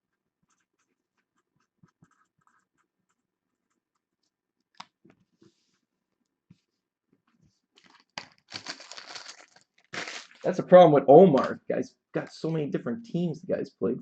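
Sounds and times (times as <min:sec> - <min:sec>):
cards and paper handling: 0:07.8 - 0:10.6, 0:11.3 - 0:11.6.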